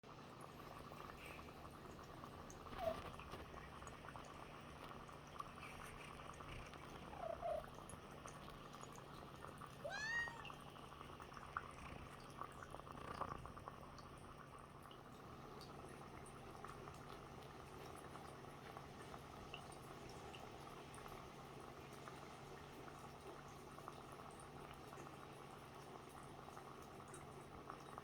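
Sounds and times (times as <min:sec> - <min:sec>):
dry ice bubbling in water: 0:00.1 - 0:28.0
small crackles and ticks: 0:00.3 - 0:28.0
cat meowing: 0:09.8 - 0:10.6.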